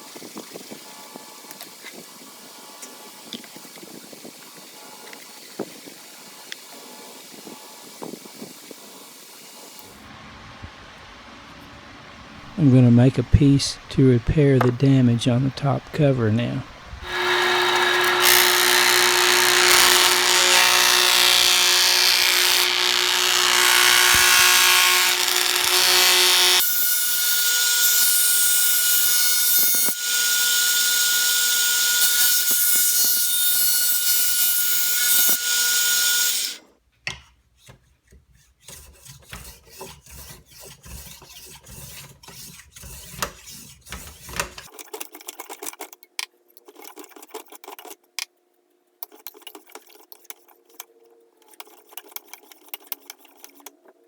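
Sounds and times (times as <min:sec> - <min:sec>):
power tool motor whine: 0:17.0 - 0:32.6.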